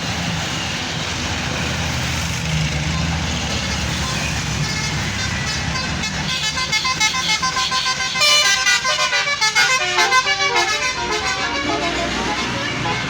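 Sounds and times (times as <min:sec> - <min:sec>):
bus engine rumbling: 0:00.0 - 0:13.0
multi-tone horn melody: 0:04.0 - 0:13.0.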